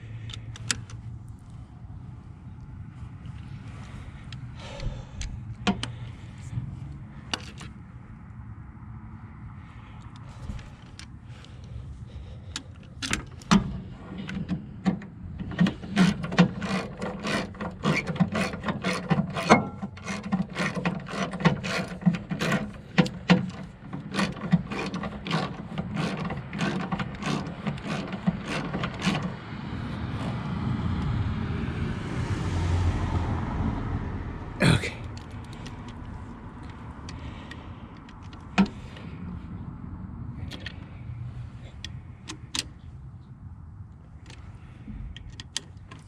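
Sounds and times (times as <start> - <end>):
ratchet wrench clicking: 15.4 - 29.5.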